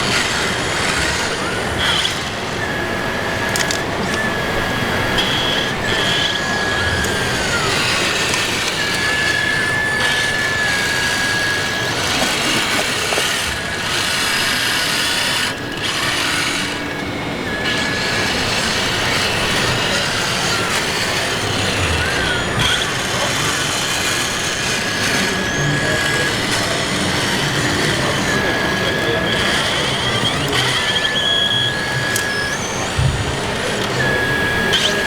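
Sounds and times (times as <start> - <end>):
high motor whine: 0.0 - 35.0
mechanical din: 32.6 - 34.9.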